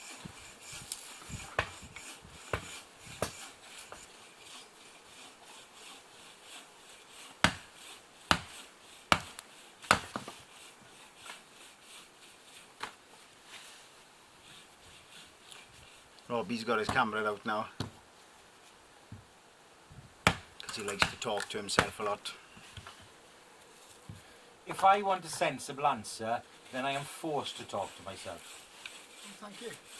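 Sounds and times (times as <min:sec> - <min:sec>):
wood knocking: 0:17.8 - 0:18.0, 0:20.2 - 0:22.2.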